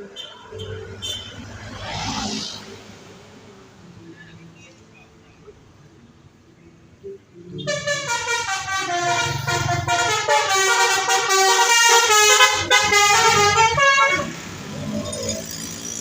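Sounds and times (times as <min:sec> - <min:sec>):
bus horn playing a melody: 0:07.6 - 0:14.4.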